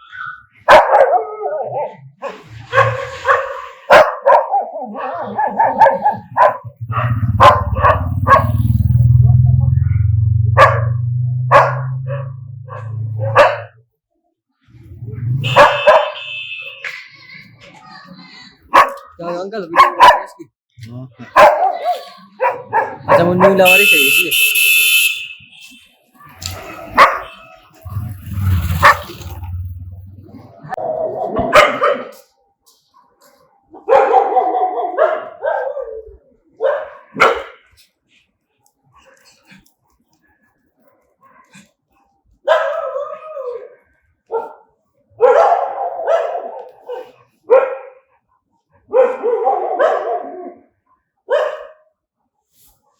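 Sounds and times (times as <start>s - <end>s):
dogs barking aggressively: 0.5s - 8.9s, 10.5s - 13.8s, 15.3s - 17.2s, 18.6s - 20.5s, 21.2s - 25.1s, 26.4s - 29.5s, 30.6s - 32.4s, 33.7s - 37.8s, 41.0s - 51.9s.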